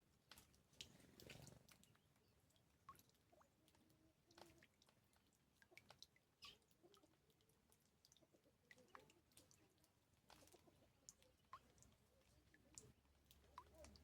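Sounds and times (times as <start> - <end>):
birds splashing in water: 0.3 - 14.0
small birds chirping: 5.6 - 14.0.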